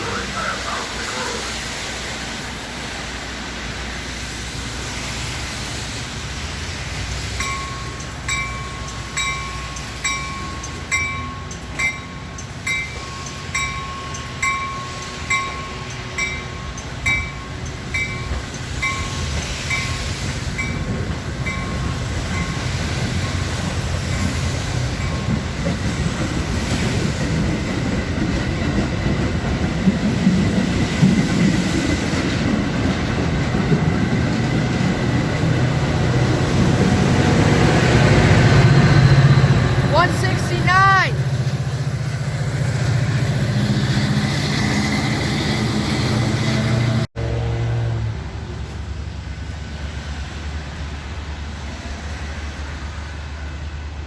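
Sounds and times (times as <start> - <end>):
train rumble and wheel noise: 0.0 - 54.0
railroad crossing bell ringing: 7.1 - 26.0, 37.6 - 47.0.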